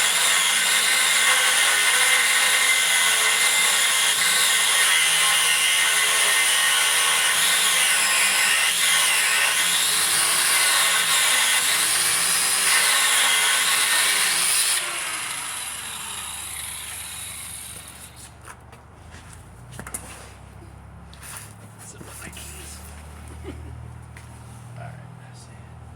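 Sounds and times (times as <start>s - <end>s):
abrasive cut-off wheel cutting steel: 0.0s - 18.3s.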